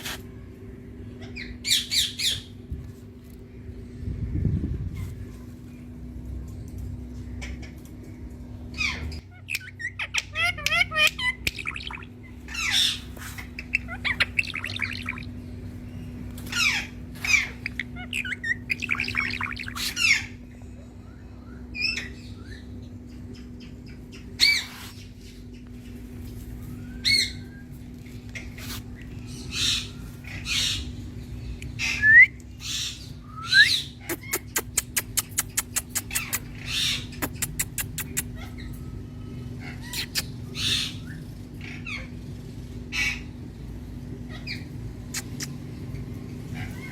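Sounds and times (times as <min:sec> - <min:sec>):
low hum: 0:00.0 - 0:46.9
parakeet squawking and chattering: 0:08.7 - 0:20.4, 0:21.8 - 0:26.0, 0:28.2 - 0:31.0, 0:32.6 - 0:43.5, 0:44.2 - 0:46.9.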